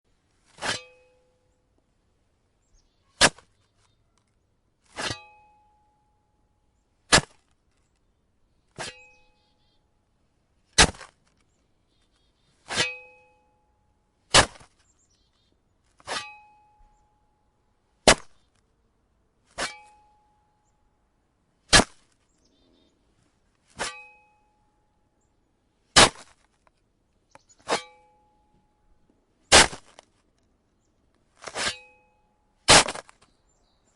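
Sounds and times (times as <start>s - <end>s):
shovel chopping icy snow: 0.5s - 1.1s, 3.2s - 3.5s, 4.9s - 5.4s, 7.1s - 7.5s, 8.8s - 9.1s, 10.8s - 11.2s, 12.7s - 13.1s, 14.3s - 14.8s, 16.0s - 16.4s, 18.0s - 18.4s, 19.5s - 20.0s, 21.7s - 22.1s, 23.7s - 24.2s, 26.0s - 26.5s, 27.6s - 28.0s, 29.5s - 30.1s, 31.4s - 31.9s, 32.7s - 33.2s
metallic ring of shovel blade: 0.5s - 1.6s, 4.9s - 6.5s, 8.8s - 9.7s, 12.6s - 13.8s, 16.0s - 17.4s, 19.6s - 20.7s, 23.8s - 25.0s, 27.5s - 30.0s, 31.4s - 33.2s.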